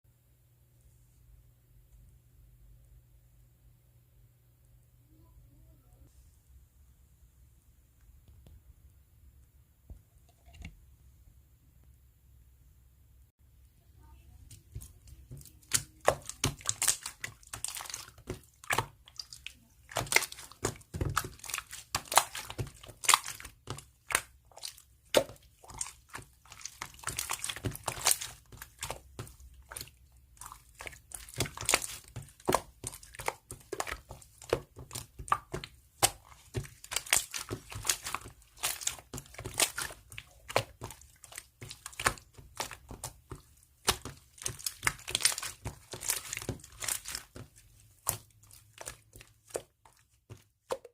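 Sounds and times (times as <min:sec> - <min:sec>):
slime crackling and popping: 0:14.8 - 0:49.7.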